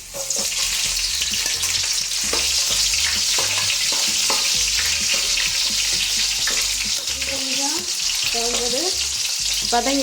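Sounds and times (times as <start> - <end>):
garlic sizzling in hot oil: 0.0 - 10.0.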